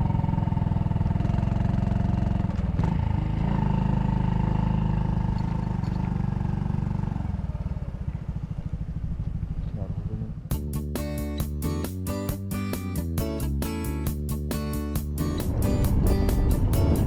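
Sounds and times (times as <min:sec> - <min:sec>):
motorcycle engine running: 0:00.0 - 0:10.8, 0:14.1 - 0:17.0.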